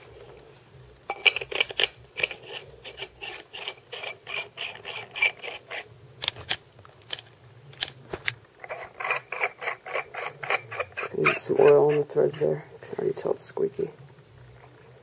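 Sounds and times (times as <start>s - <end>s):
dry threads squeaking and scraping: 1.4s - 5.9s, 8.6s - 13.3s.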